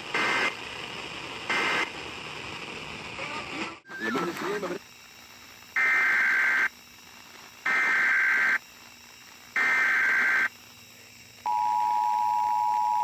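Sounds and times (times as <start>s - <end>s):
warbling digital data tones: 5.8s - 6.7s, 7.6s - 8.7s, 9.6s - 10.5s.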